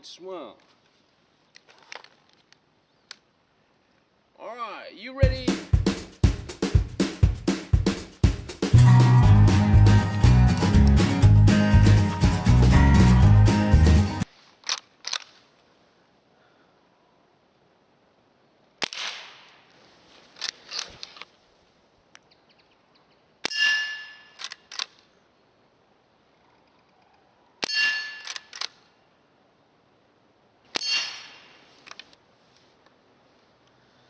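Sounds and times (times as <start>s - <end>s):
air rifle shot crack: 18.8s - 19.6s
metallic ring: 23.5s - 24.4s, 27.6s - 28.4s, 30.8s - 31.6s
rifle lever clicks: 28.2s - 28.8s.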